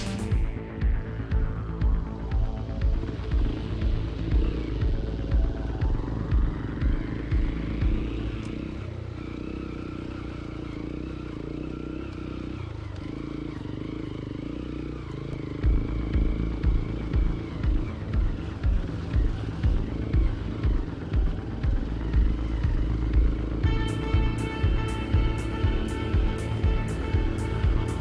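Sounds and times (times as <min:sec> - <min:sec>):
low thumps: 0:00.0 - 0:08.4, 0:15.6 - 0:28.0
motorcycle engine running: 0:00.0 - 0:28.0.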